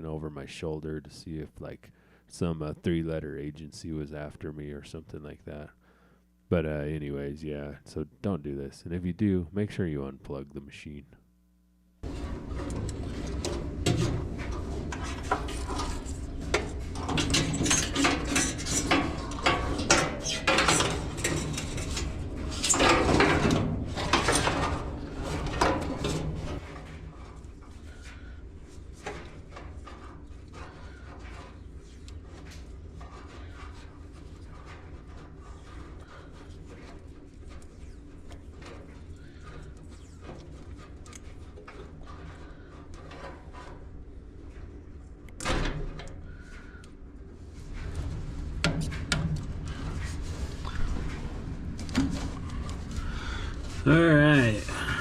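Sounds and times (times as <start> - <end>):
steady low hum: 0.0 - 55.0
hands and tools rustling and clicking: 12.0 - 47.0.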